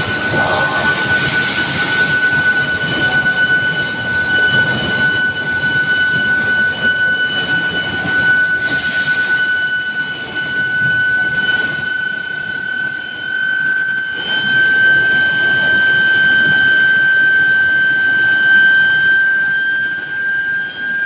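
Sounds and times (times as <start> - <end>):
machinery noise: 0.0 - 5.4
furnace high-pitched whine: 0.0 - 11.8.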